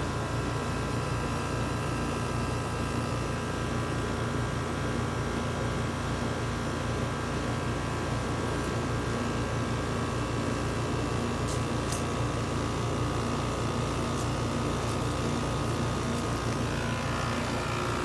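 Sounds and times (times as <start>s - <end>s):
air conditioner compressor humming: 0.0s - 18.0s
outdoor fan: 0.0s - 18.0s.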